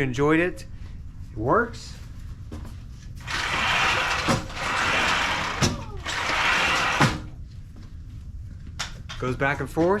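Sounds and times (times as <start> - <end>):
sliding door rolling on track: 3.2 - 7.3.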